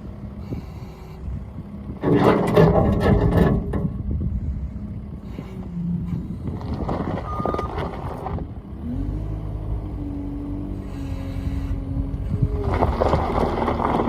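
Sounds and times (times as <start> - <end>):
diesel engine idling and revving: 0.0 - 14.0
short beep: 7.2 - 7.8.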